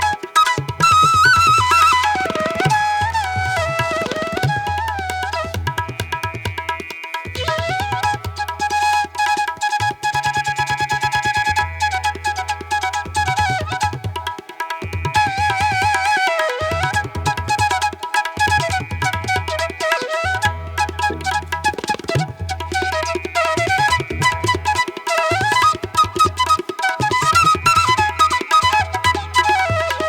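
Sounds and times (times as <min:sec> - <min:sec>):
tabla drumming: 0:00.0 - 0:30.0.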